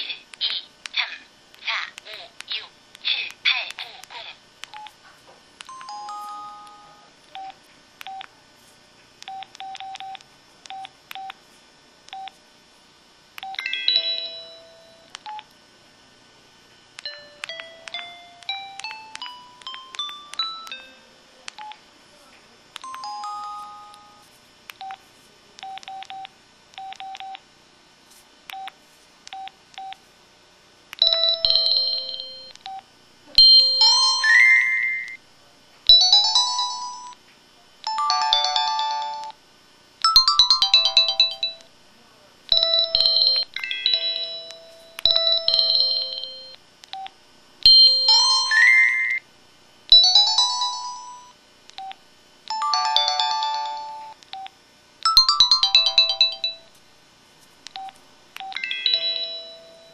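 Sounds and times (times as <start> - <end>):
bright phone jingle: 5.7 - 7.1, 13.5 - 15.1, 17.1 - 21.2, 22.8 - 24.3, 31.0 - 32.5, 33.4 - 35.2, 36.0 - 37.2, 37.9 - 39.4, 40.0 - 41.6, 42.6 - 46.6, 47.7 - 49.2, 50.0 - 51.4, 52.5 - 54.2, 55.1 - 56.7, 58.5 - 59.9
phone keypad beeps: 5.7 - 8.3, 21.5 - 21.8, 25.6 - 27.4.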